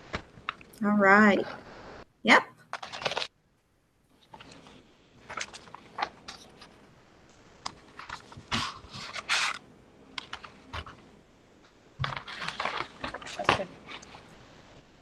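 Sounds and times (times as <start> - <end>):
paper pages rustling: 2.7 - 3.3, 4.2 - 11.1, 12.0 - 14.4.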